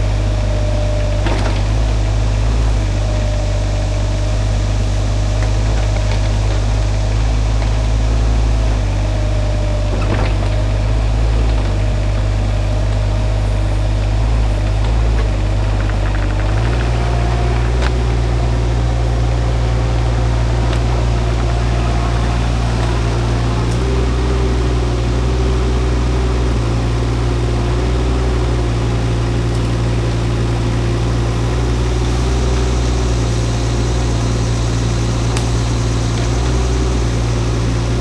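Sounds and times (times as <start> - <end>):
excavator engine running: 0.0 - 38.0.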